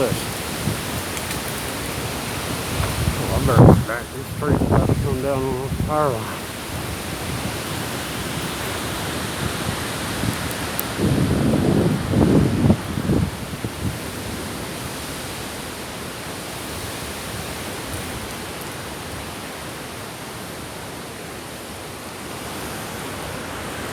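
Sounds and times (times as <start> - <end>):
wind buffeting microphone: 0.0 - 15.6
storm hiss: 0.0 - 19.9.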